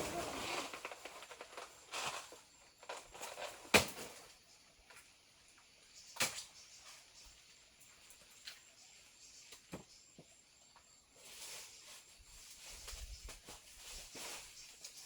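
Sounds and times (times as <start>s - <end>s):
rustling: 0.0s - 4.2s, 11.2s - 15.0s.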